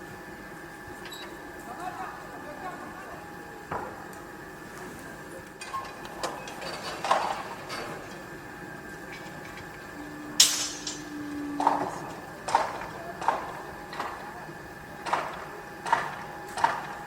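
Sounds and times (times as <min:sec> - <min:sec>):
steady low hum: 0:00.0 - 0:17.0
loud metal clang: 0:10.4 - 0:11.1.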